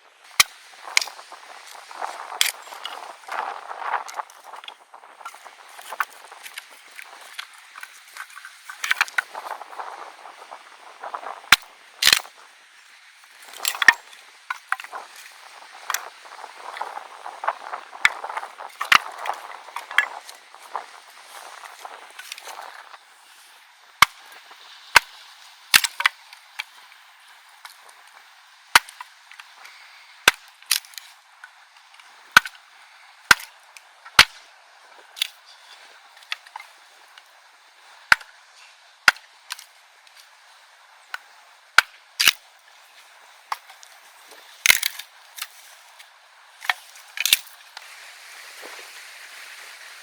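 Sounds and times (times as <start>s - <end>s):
fish sizzling in hot oil: 47.9s - 50.0s.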